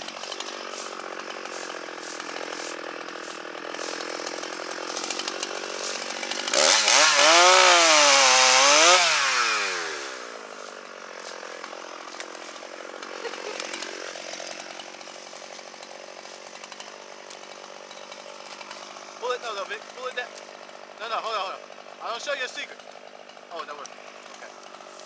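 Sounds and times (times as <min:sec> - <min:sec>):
chainsaw idling and revving: 0:00.0 - 0:25.0.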